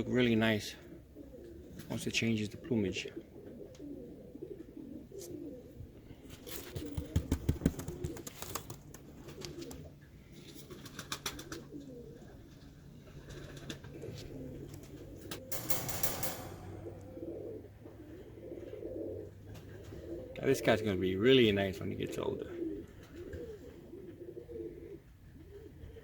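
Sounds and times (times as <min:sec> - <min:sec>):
pigeons cooing: 0:00.0 - 0:26.0
sharp clicks and knocks: 0:15.2 - 0:17.2.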